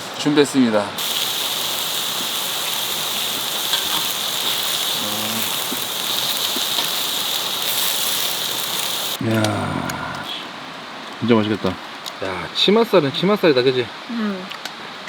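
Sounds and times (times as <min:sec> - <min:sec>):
beef sizzling in a pan: 0:01.0 - 0:09.2.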